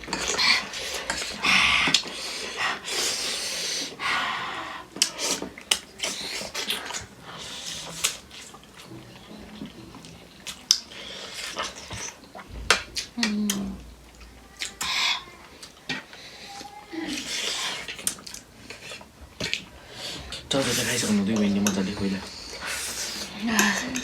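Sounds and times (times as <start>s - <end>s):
slurping: 0.0s - 24.0s
wet chewing: 5.0s - 24.0s.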